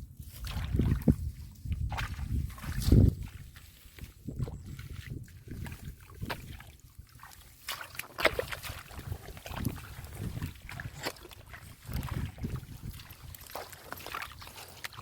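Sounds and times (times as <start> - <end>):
muddy water splashing: 0.1 - 15.0.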